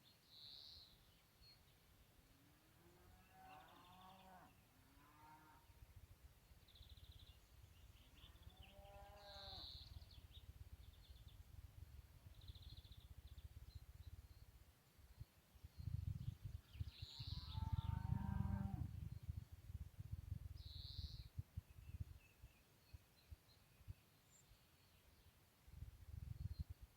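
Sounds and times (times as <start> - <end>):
small birds chirping: 6.6 - 11.6, 12.2 - 19.6, 20.4 - 25.4.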